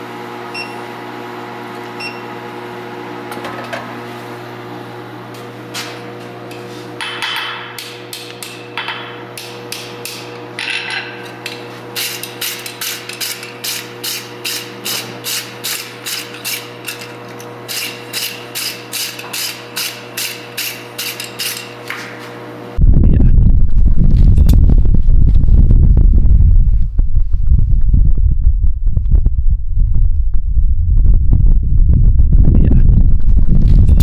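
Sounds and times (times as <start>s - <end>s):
steady hum: 0.0s - 34.0s
scraping sounds: 5.4s - 7.0s, 10.7s - 22.4s, 33.3s - 34.0s.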